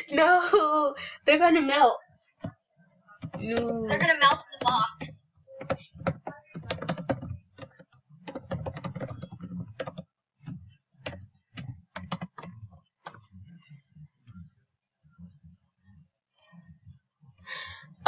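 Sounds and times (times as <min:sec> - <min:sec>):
typing on computer keyboard: 0:03.2 - 0:13.2.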